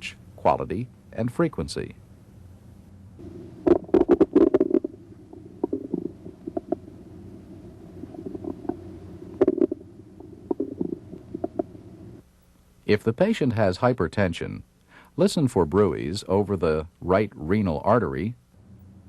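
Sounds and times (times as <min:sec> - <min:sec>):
low steady hum: 0:00.0 - 0:19.0
bowel clicks and gurgles: 0:03.6 - 0:06.9, 0:08.1 - 0:11.7.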